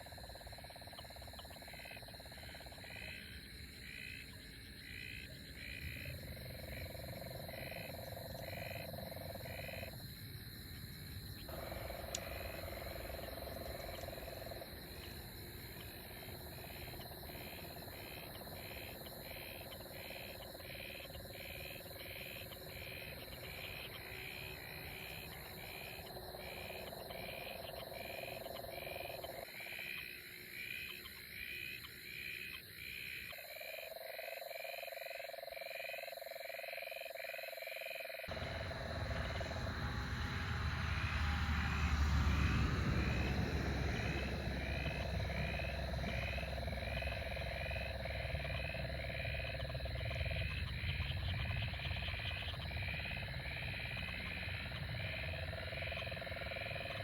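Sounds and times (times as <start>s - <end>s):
frogs calling: 0.0s - 57.0s
low rumble: 38.3s - 54.0s.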